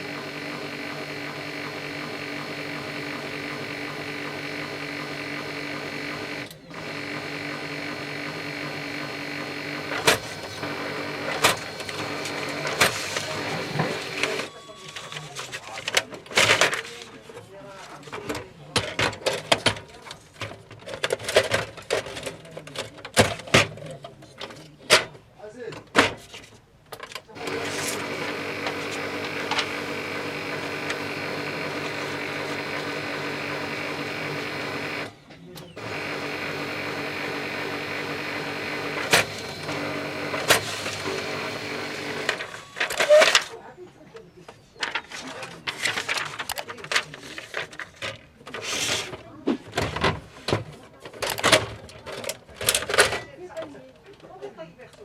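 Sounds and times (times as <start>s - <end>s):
small motor humming: 0.0s - 14.5s, 27.4s - 42.9s
person's voice: 10.4s - 18.9s, 27.3s - 42.4s.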